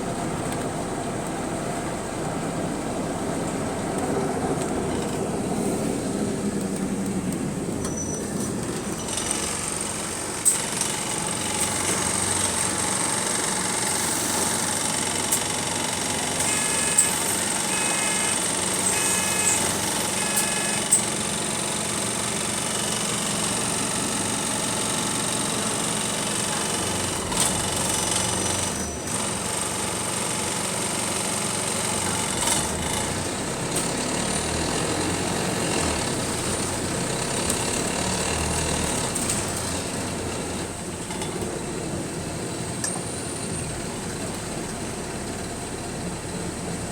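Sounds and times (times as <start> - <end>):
bus engine and road noise: 0.0 - 46.9
short electronic beeps: 16.5 - 20.8.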